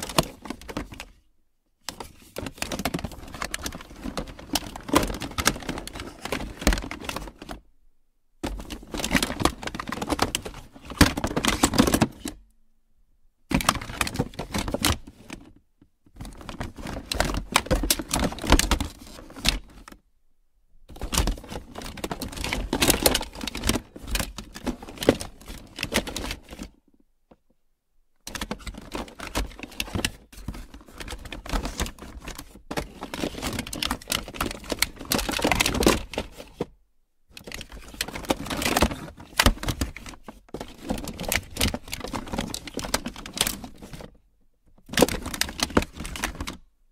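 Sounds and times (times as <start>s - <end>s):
plastic toys rattling in a box: 0.0s - 1.2s, 1.8s - 7.6s, 8.4s - 12.4s, 13.5s - 20.0s, 20.9s - 26.8s, 28.3s - 36.7s, 37.3s - 46.6s.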